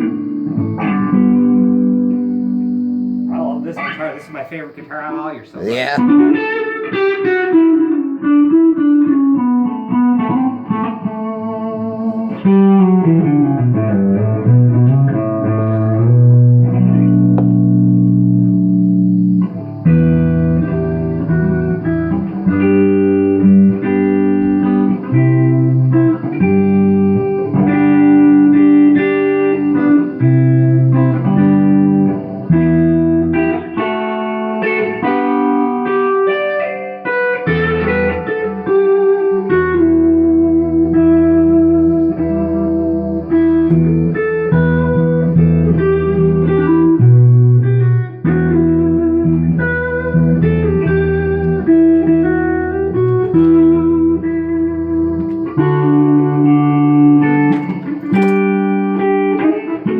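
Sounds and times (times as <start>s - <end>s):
electric guitar playing: 0.0s - 59.9s.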